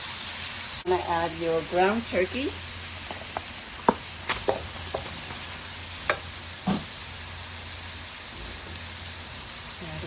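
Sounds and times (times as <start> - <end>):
food sizzling in hot oil: 0.0 - 10.0
utensil knocking against pan: 3.1 - 5.4.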